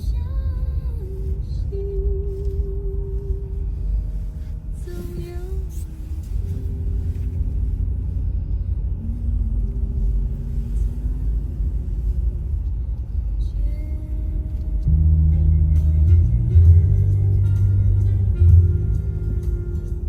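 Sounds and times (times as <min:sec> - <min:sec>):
car driving on road: 0:00.0 - 0:20.0
slow melody of held notes: 0:13.7 - 0:20.0.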